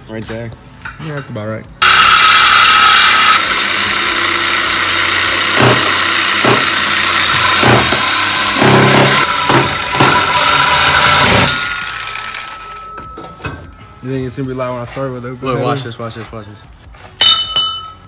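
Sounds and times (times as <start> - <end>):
power tool cutting steel pipe: 1.8 - 13.0.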